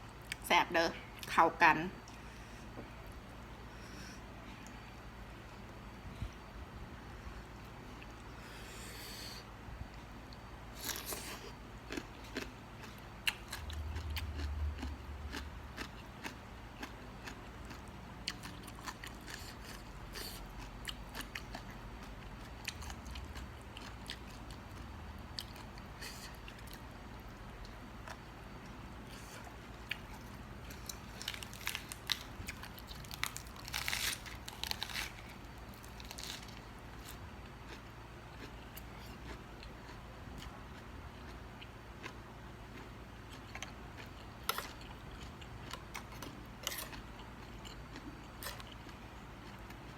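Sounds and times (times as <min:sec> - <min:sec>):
crisp crunching and chewing: 0:10.8 - 0:26.8, 0:29.8 - 0:49.9.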